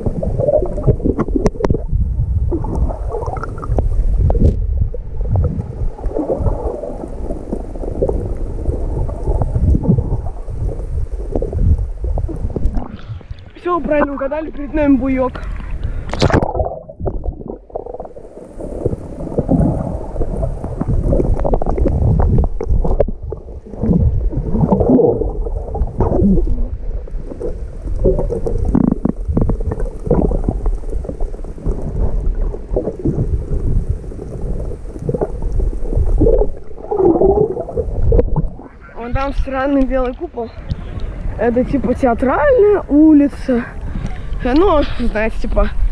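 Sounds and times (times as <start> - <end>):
water sloshing and gurgling: 0.0 - 45.9.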